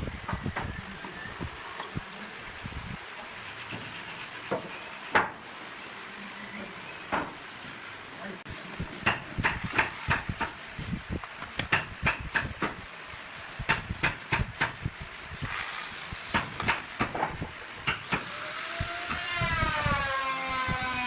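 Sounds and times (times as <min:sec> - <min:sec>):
power tool motor whine: 0:09.6 - 0:10.5, 0:15.4 - 0:17.4, 0:18.2 - 0:21.0.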